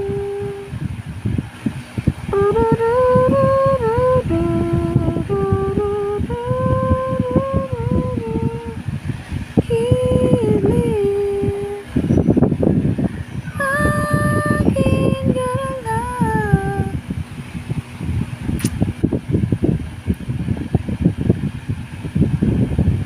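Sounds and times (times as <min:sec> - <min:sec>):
person humming a slow tune: 0:00.0 - 0:01.0, 0:02.2 - 0:09.0, 0:09.6 - 0:11.9, 0:13.5 - 0:17.1.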